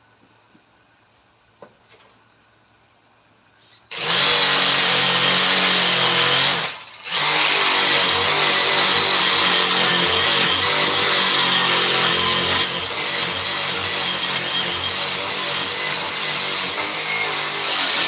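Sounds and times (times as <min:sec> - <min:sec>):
power tool whining: 0:03.9 - 0:18.0.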